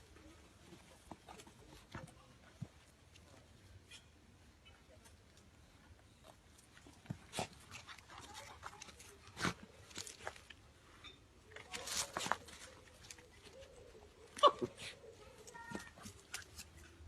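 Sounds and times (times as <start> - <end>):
dog paws clicking and scuffling: 6.1 - 10.6, 11.5 - 14.4, 15.2 - 17.0.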